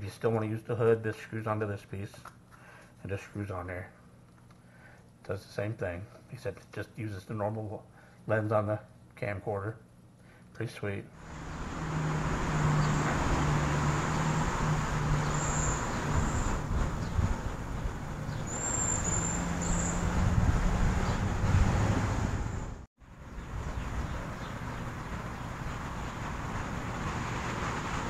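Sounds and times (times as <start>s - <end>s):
road traffic rumble: 11.2s - 28.0s.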